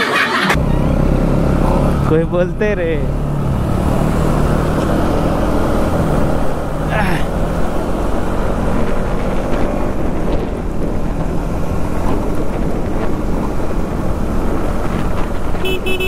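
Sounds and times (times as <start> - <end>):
motorcycle engine running: 0.6 - 16.0
wind buffeting microphone: 3.2 - 16.0.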